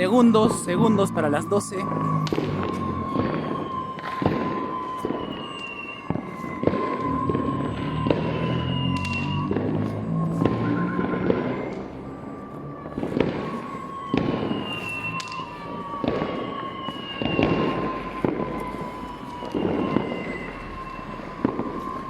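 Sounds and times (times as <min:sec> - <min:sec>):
fireworks bursting and cracking: 0:00.0 - 0:11.8, 0:12.8 - 0:22.0
rumble of distant bangs: 0:01.8 - 0:05.3.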